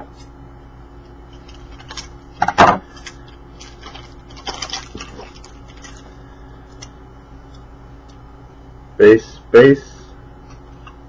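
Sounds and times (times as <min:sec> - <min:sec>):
wrapper rustling and crinkling: 0:02.9 - 0:06.2.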